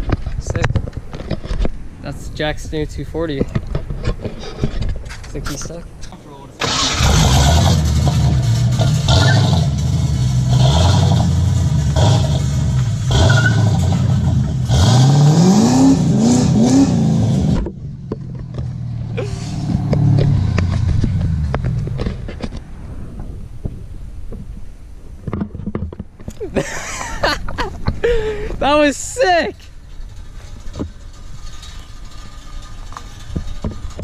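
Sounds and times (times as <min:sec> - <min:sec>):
car engine revving: 0:06.6 - 0:22.6.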